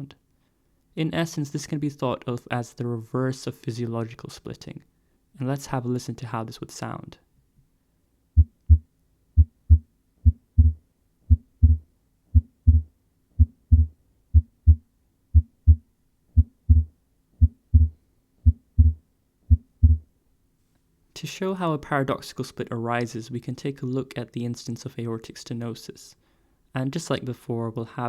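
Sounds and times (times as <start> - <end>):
heartbeat thumps: 8.4 - 15.8, 16.4 - 20.1.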